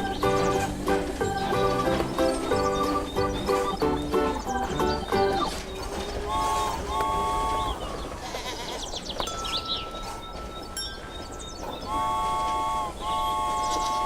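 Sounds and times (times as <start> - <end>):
high chirping sound effects: 0.0 - 7.8
toy train whistle tooting: 0.0 - 8.5, 11.6 - 14.0.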